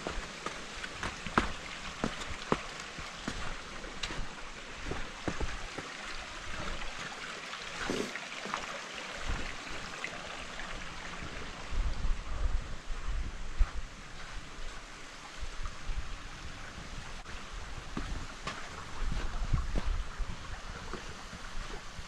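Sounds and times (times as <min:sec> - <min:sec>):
water drips and splashes: 0:00.0 - 0:11.9
water rushing: 0:00.0 - 0:12.0.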